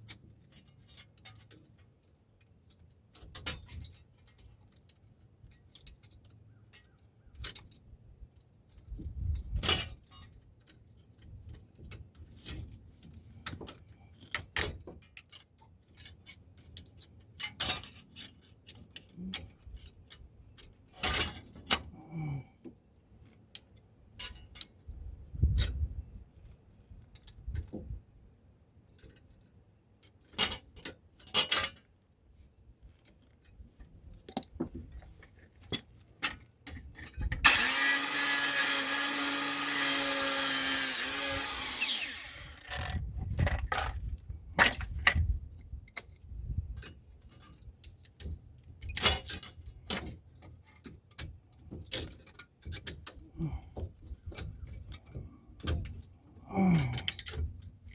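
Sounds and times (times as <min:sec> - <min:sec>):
power tool running: 0:37.4 - 0:42.9.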